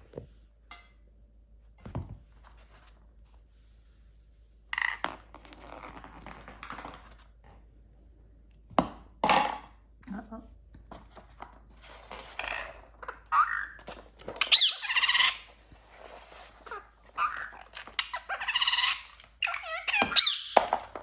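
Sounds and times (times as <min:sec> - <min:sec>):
parakeet squeaky calls: 0:12.4 - 0:13.8, 0:14.4 - 0:15.5, 0:16.6 - 0:20.6.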